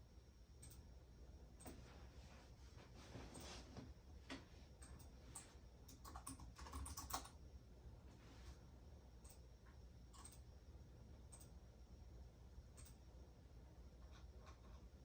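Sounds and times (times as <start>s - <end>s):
computer keyboard typing: 4.8s - 7.4s, 10.1s - 10.4s.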